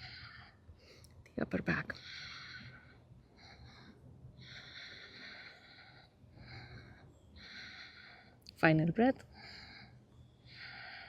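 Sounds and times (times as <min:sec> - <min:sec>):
faint nose breathing: 0:00.0 - 0:01.2, 0:01.9 - 0:08.6, 0:09.2 - 0:11.0.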